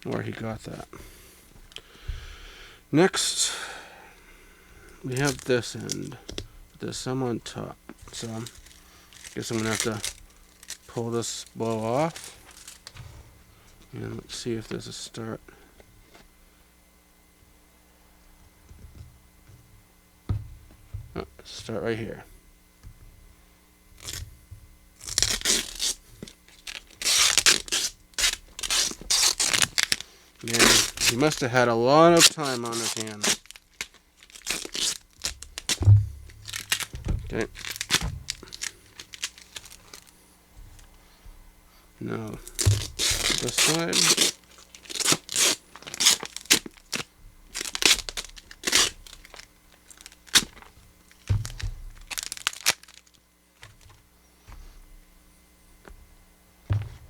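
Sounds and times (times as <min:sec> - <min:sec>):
dull handling thumps: 0:01.5 - 0:02.4, 0:05.0 - 0:14.9, 0:18.2 - 0:25.4, 0:35.1 - 0:43.7, 0:50.4 - 0:52.4, 0:53.6 - 0:57.0
duct tape peeling off cardboard: 0:08.0 - 0:11.0, 0:11.6 - 0:13.1, 0:23.9 - 0:24.4, 0:25.0 - 0:31.5, 0:32.2 - 0:40.9, 0:42.4 - 0:53.9.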